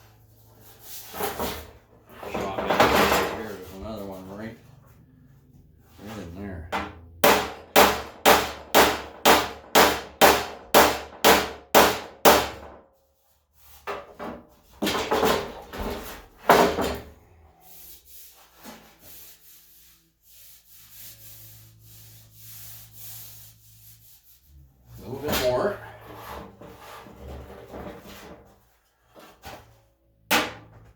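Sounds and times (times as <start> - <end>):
rubbing and scraping on metal: 0.0 - 5.0, 13.0 - 29.8.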